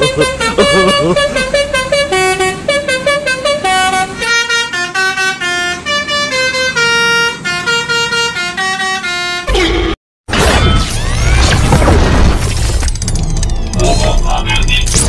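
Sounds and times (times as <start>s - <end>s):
musical bus horn tune: 0.0s - 10.0s.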